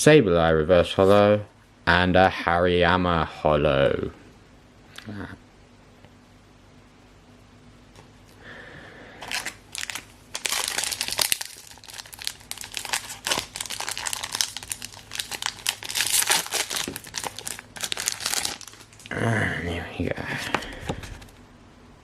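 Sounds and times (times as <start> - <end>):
foil wrapper crinkling and tearing: 9.2 - 19.1.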